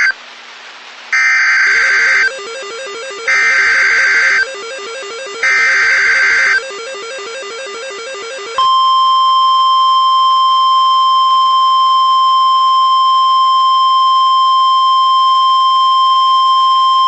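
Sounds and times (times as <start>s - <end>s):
steady warning alarm beep: 1.2s - 9.6s.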